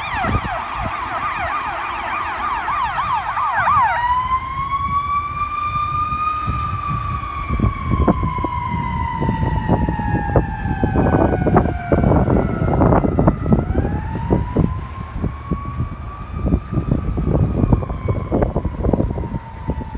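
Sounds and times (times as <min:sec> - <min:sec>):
fire truck siren wailing: 0:00.0 - 0:19.9.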